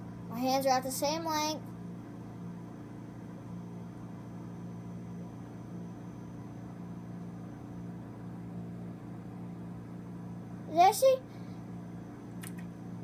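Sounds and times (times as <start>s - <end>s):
steady low hum with pulsing tone: 0.0s - 13.0s.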